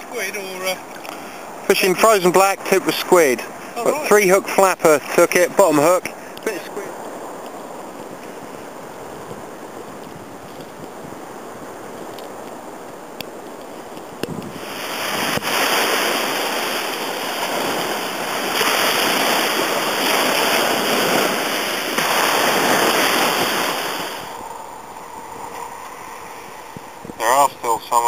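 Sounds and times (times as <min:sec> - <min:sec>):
sea waves breaking: 0:00.0 - 0:28.0.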